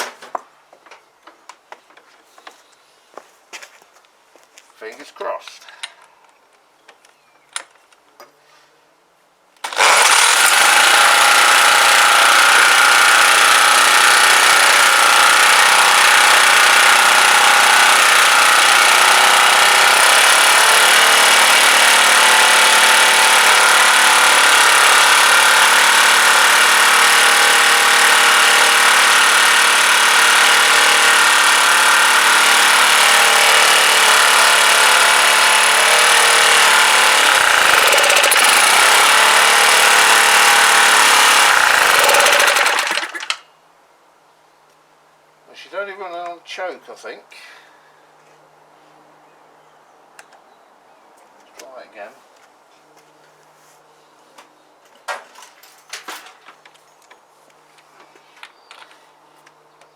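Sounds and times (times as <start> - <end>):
small petrol engine idling fast: 9.6 - 43.4.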